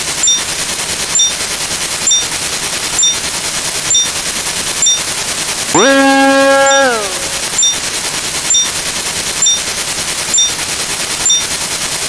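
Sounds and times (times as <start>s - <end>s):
short high blip: 5.8s - 7.8s.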